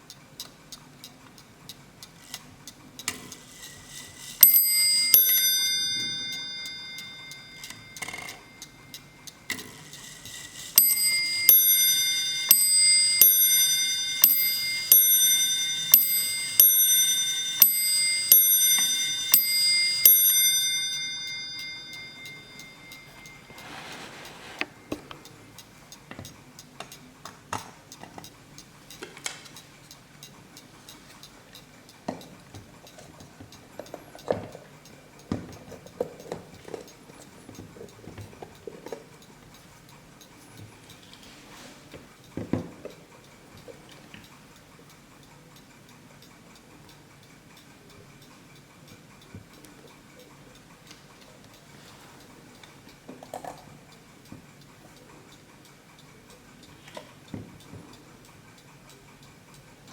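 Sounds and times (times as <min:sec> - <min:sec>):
clock ticking: 0:00.0 - 0:59.9
mantel clock striking bells: 0:04.1 - 0:25.5.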